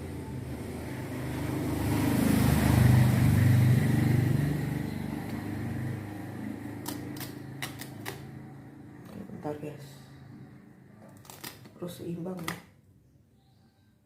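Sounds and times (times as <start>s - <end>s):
vehicle engine passing by: 0.0s - 11.0s.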